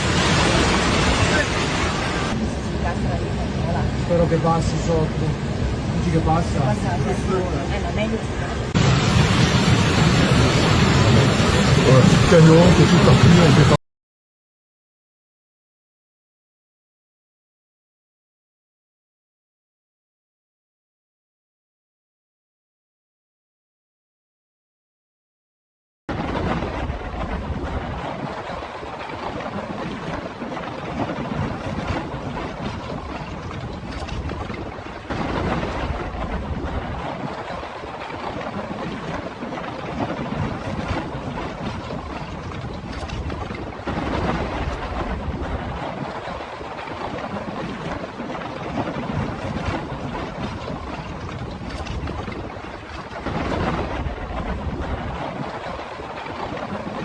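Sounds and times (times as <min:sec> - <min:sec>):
low rumble: 0:00.0 - 0:13.8, 0:26.1 - 0:28.6, 0:31.1 - 0:39.0, 0:40.3 - 0:47.4, 0:49.2 - 0:55.9
rushing water: 0:00.0 - 0:13.8, 0:26.1 - 0:57.0
rushing wind: 0:00.0 - 0:13.8, 0:26.1 - 0:57.0
wind buffeting microphone: 0:26.1 - 0:57.0.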